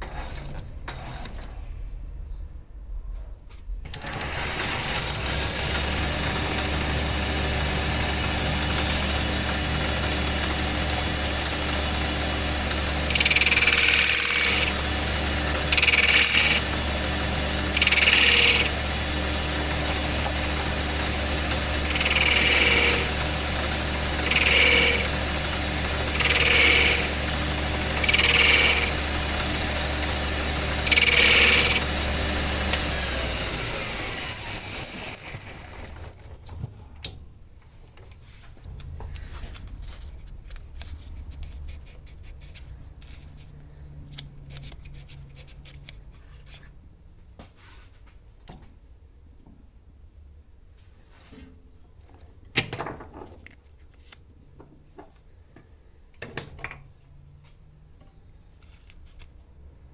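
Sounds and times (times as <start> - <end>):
electric motor humming: 3.9 - 36.1.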